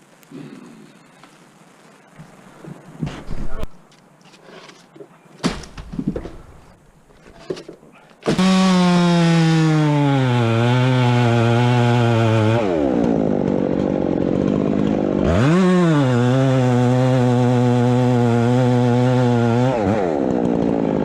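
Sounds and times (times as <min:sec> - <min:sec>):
chainsaw running: 0:08.3 - 0:21.0.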